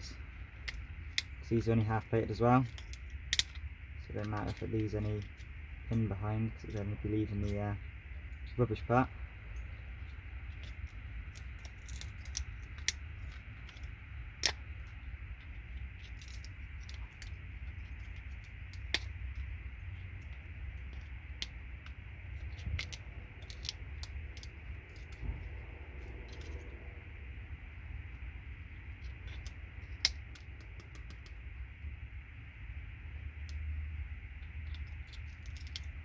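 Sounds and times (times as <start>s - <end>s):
steady low hum: 0.0s - 36.0s
small metallic clinks: 2.3s - 7.8s.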